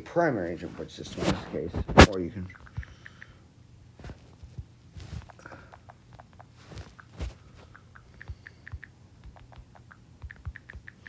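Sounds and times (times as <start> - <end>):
low steady hum: 0.0 - 11.0
keyboard typing: 5.3 - 11.0.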